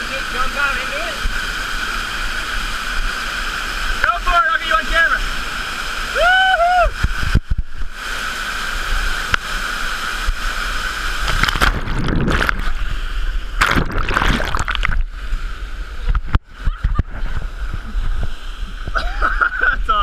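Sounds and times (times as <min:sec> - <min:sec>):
waterfall rushing: 0:00.0 - 0:19.6
person splashing in water: 0:11.2 - 0:12.8, 0:13.6 - 0:15.1.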